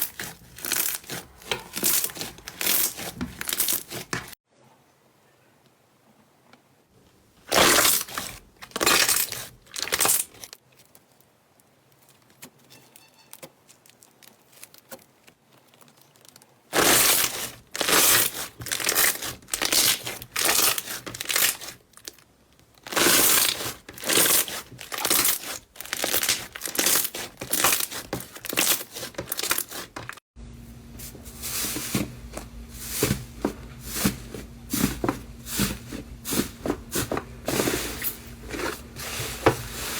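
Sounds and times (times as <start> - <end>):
slime crackling: 0.0 - 4.4, 13.7 - 22.2, 22.8 - 30.1.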